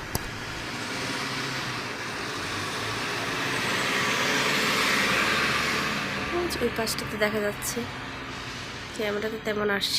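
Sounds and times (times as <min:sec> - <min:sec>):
vehicle tyre and road hiss: 0:08.2 - 0:08.9.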